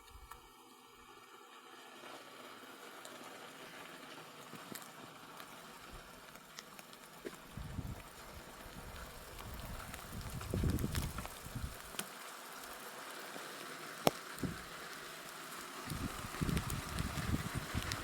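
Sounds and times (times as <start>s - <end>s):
rain hissing: 0.0s - 18.0s
hail ticking: 1.5s - 18.0s.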